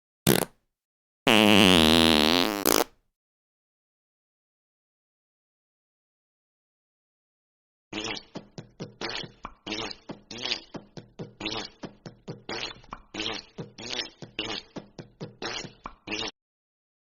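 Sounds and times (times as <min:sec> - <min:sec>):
fart sound effects: 0:00.3 - 0:00.5, 0:01.3 - 0:02.9, 0:08.0 - 0:16.4.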